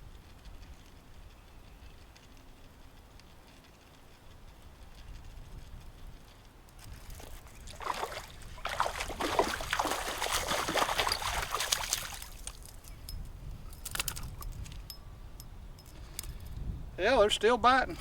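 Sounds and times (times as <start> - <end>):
wind rumble on microphone: 0.0 - 18.0
fish splashing in water: 7.7 - 12.6.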